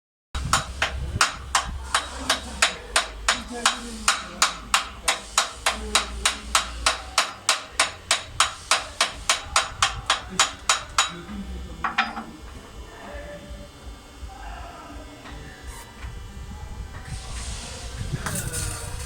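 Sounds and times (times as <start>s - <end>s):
hammer striking metal: 0.4s - 11.2s, 11.8s - 12.3s.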